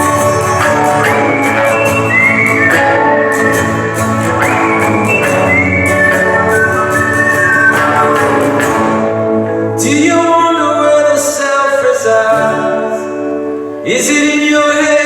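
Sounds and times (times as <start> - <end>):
live band instrumental music: 0.0 - 10.2.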